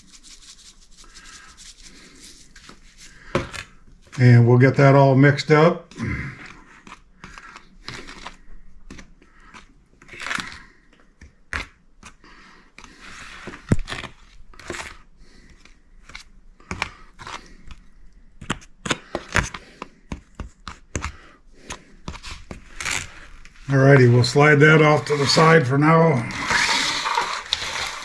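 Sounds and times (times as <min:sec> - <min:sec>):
utensil scraping in bowl: 0:00.0 - 0:03.1, 0:22.7 - 0:28.0.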